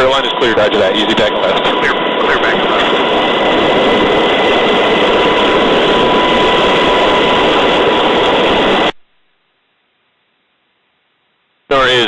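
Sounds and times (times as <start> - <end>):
helicopter engines and rotor: 0.0 - 9.0.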